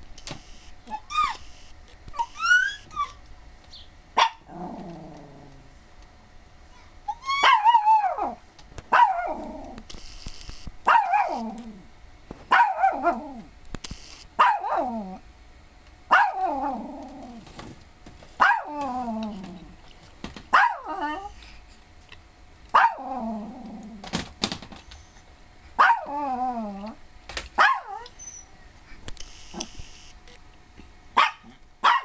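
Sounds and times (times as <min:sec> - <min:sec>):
dog barking: 0:04.2 - 0:04.5, 0:07.4 - 0:09.4, 0:10.9 - 0:11.4, 0:12.5 - 0:13.2, 0:14.4 - 0:14.9, 0:16.1 - 0:16.4, 0:18.4 - 0:18.7, 0:20.5 - 0:20.9, 0:22.8 - 0:23.1, 0:25.8 - 0:26.1, 0:27.6 - 0:28.1, 0:31.2 - 0:32.0.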